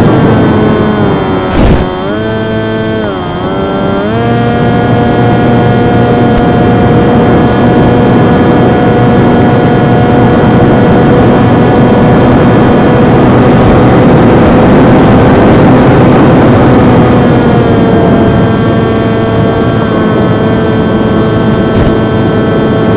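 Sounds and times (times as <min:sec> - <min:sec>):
electric motor and propeller whining: 0:00.0 - 0:22.9.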